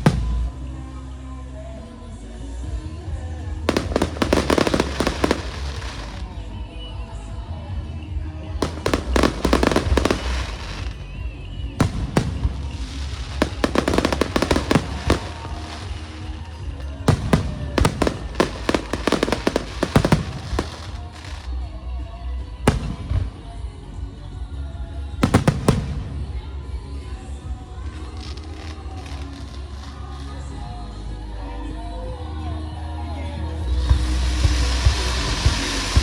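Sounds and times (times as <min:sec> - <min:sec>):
fireworks crackling bangs: 0:00.0 - 0:00.7, 0:03.7 - 0:06.4, 0:08.6 - 0:21.5, 0:22.7 - 0:23.7, 0:25.2 - 0:30.3, 0:33.7 - 0:36.0.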